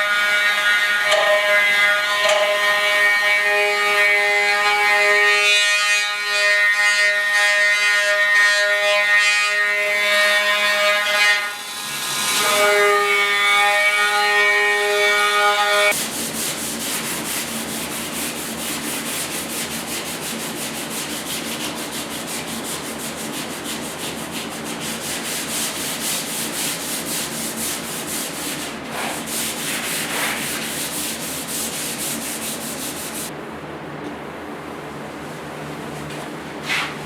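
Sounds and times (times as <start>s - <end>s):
hand sanding on steel: 15.9s - 33.3s.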